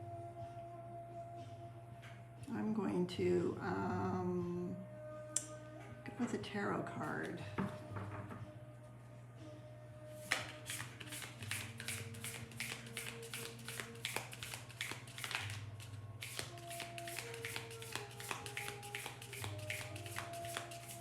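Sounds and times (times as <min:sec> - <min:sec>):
cards being shuffled: 0:10.2 - 0:21.0.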